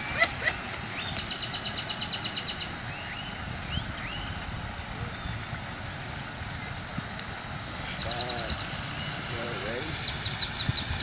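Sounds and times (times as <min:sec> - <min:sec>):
bird chirps: 0:07.8 - 0:09.1.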